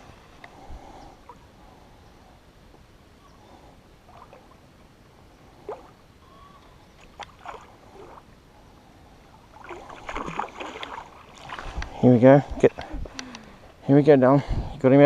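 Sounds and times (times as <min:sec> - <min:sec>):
water lapping at river edge: 0:03.2 - 0:13.7
soft splashes: 0:07.0 - 0:08.3, 0:09.5 - 0:11.9.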